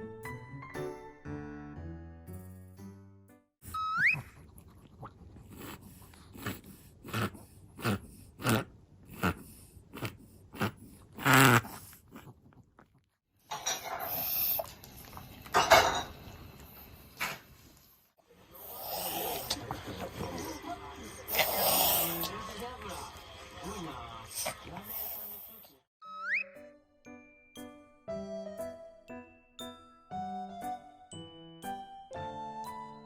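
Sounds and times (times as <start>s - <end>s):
dog breathing noisily: 18.5s - 22.5s.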